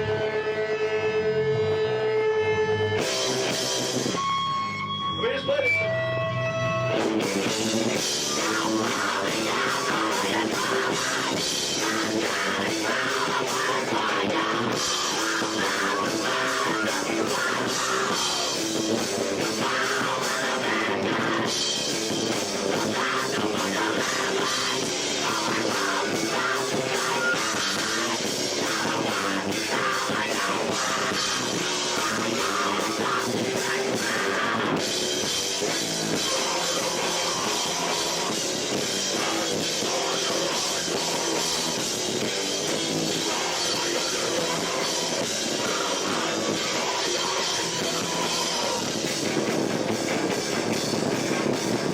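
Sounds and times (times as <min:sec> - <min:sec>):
live rock band playing: 0:00.0 - 0:51.9.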